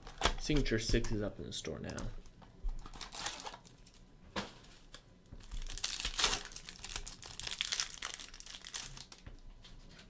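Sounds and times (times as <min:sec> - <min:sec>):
wrapper crinkling and tearing: 0:02.9 - 0:09.3.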